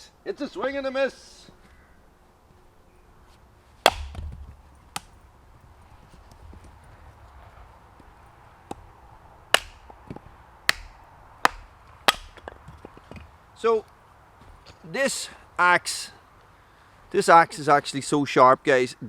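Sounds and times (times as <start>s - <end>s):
axe chopping wood: 3.8s - 5.2s, 9.5s - 13.2s.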